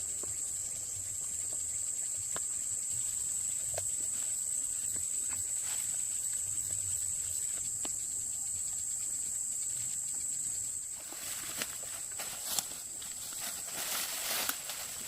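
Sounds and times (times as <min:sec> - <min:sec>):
insects buzzing: 0:00.0 - 0:15.0
faint clicks and rustles: 0:09.7 - 0:15.0.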